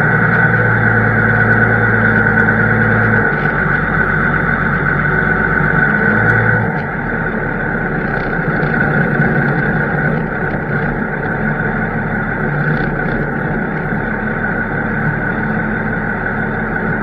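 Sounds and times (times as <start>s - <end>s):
high whine: 0.0s - 17.0s
tractor diesel engine running: 0.0s - 17.0s.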